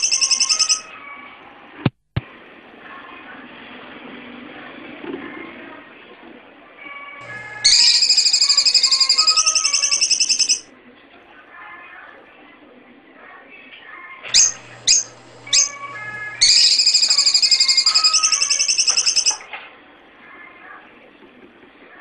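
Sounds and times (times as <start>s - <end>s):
shrew chirping: 0.0s - 0.9s, 7.2s - 10.6s, 14.3s - 19.4s
shrew trilling: 0.0s - 0.9s, 7.2s - 10.6s, 14.3s - 19.4s.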